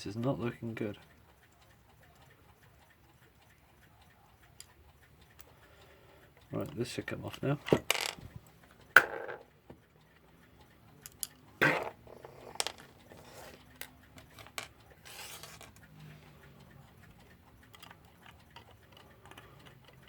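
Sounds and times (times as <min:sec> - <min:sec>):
small metal parts clicking: 0:11.0 - 0:15.9, 0:17.6 - 0:20.0.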